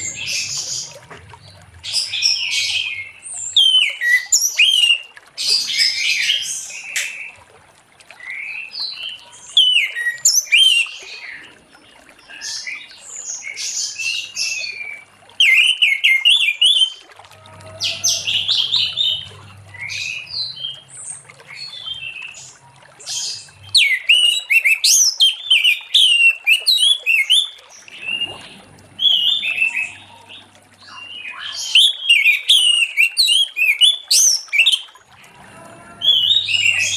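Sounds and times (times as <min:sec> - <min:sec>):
thrush singing whistled phrases: 0:09.6 - 0:11.0, 0:23.2 - 0:28.4, 0:29.0 - 0:34.9, 0:35.6 - 0:36.9.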